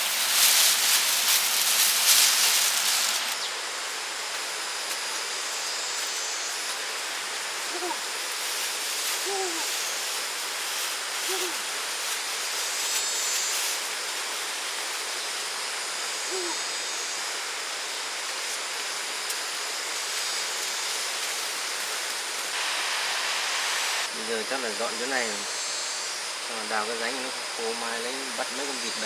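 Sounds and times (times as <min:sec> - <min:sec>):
brief low calls: 0:09.2 - 0:09.9, 0:11.3 - 0:11.7.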